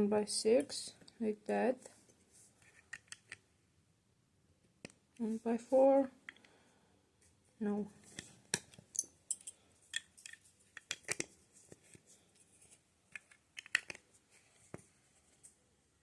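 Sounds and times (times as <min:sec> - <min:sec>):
plastic bricks clicking together: 0:02.7 - 0:03.4, 0:08.5 - 0:11.3, 0:13.1 - 0:14.0.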